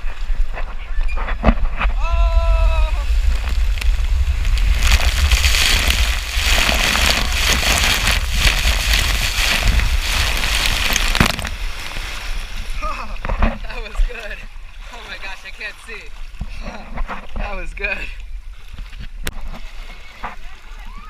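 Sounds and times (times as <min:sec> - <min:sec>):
wind buffeting microphone: 0:00.0 - 0:14.8
rushing water: 0:00.0 - 0:21.0
water splashing: 0:00.0 - 0:21.0
person yelling: 0:02.0 - 0:03.1.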